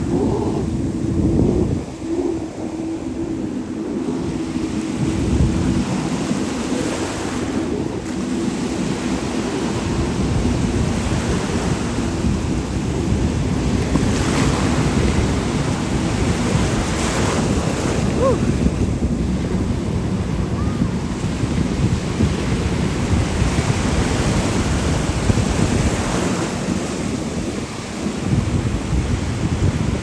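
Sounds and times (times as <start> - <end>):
ocean surf: 0.0 - 30.0
wind buffeting microphone: 0.0 - 30.0.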